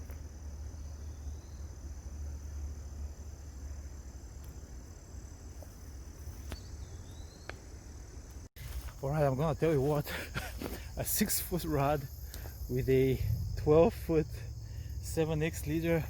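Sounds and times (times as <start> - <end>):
insects trilling: 0.0 - 16.0
low rumble: 12.9 - 15.2.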